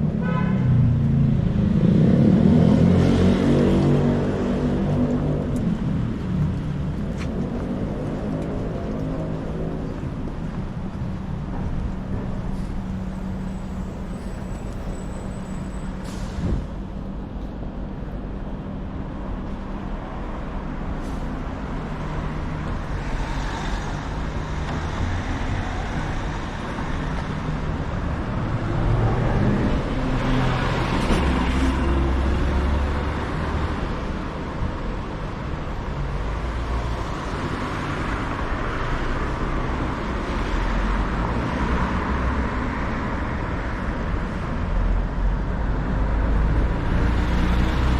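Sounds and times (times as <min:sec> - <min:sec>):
traffic rumble: 0:00.0 - 0:47.9.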